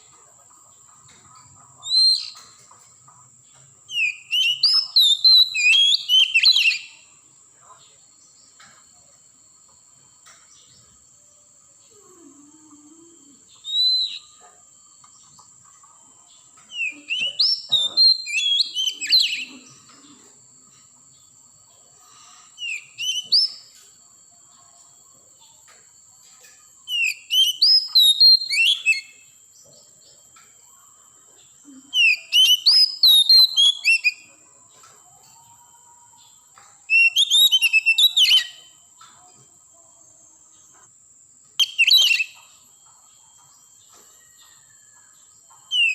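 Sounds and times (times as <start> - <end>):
bird singing whistles and chirps: 1.8 - 2.6, 3.9 - 7.2, 11.9 - 14.4, 16.7 - 19.9, 22.6 - 23.8, 26.8 - 30.6, 31.7 - 34.4, 36.9 - 38.8, 41.6 - 42.6, 43.4 - 45.9.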